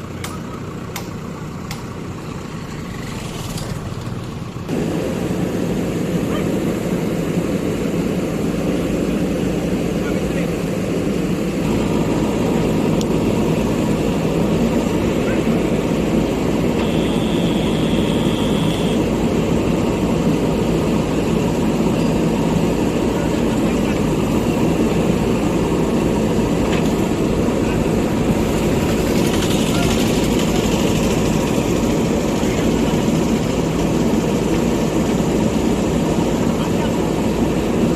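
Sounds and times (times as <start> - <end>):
diesel engine running: 0.0 - 37.9
brief high whine: 16.8 - 19.1.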